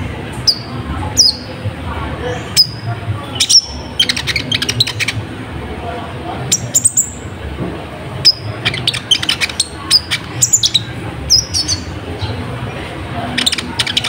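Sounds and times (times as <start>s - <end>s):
bird chipping and ticking: 0.4s - 1.6s, 2.4s - 5.3s, 6.5s - 7.3s, 8.2s - 12.5s, 13.3s - 14.0s.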